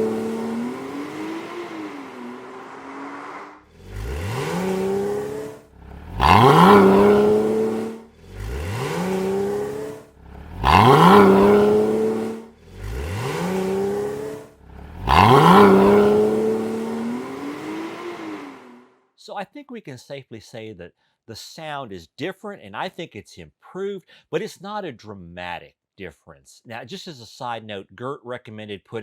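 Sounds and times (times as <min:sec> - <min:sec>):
sports car exhaust accelerating: 0:00.0 - 0:18.8.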